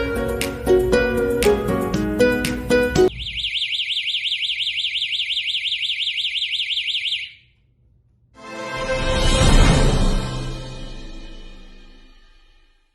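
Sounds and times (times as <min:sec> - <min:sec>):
music: 0:00.0 - 0:03.1, 0:08.4 - 0:12.9
warbling electronic alarm siren: 0:03.1 - 0:07.5.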